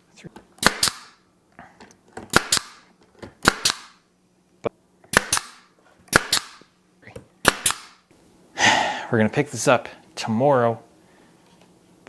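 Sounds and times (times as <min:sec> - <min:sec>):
nail gun firing: 0:00.6 - 0:01.2, 0:02.3 - 0:04.0, 0:05.1 - 0:06.7, 0:07.4 - 0:08.0.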